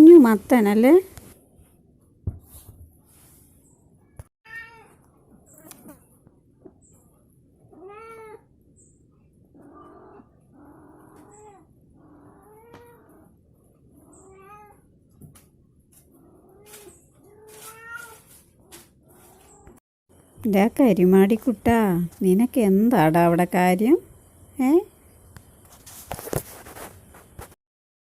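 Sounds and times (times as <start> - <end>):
cat meowing: 4.5 - 5.0, 7.7 - 8.4, 10.9 - 13.2, 14.1 - 14.8, 16.4 - 18.3.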